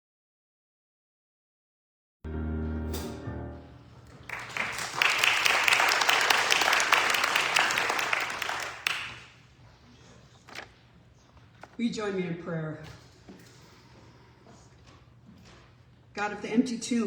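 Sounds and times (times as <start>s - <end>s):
held musical chord: 2.3s - 4.0s
congregation clapping: 4.1s - 9.4s.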